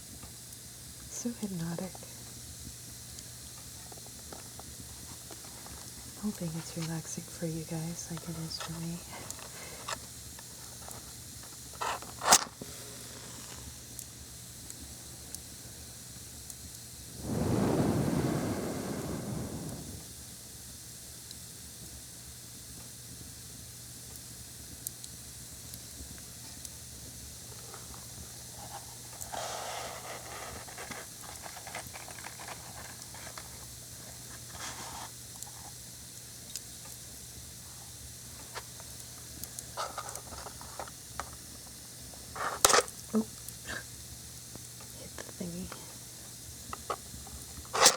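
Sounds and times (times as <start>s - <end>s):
breath blowing out match: 17.2s - 20.2s.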